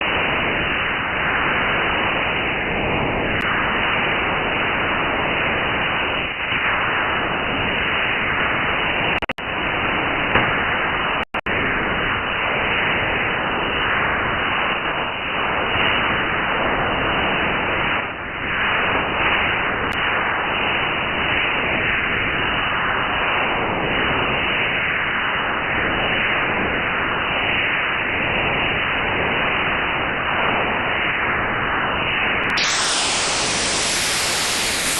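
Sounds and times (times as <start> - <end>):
radio receiver hiss-like signal: 32.5 - 34.9.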